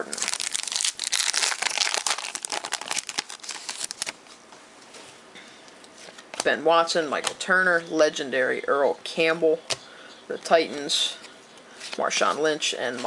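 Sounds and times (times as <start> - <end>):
wrapper crinkling and tearing: 0.0 - 4.2.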